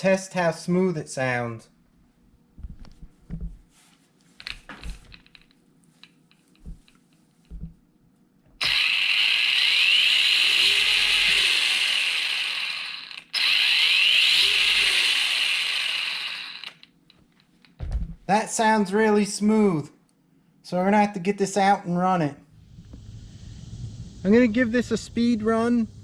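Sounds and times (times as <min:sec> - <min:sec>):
toy truck motor whirring: 0:08.6 - 0:16.9.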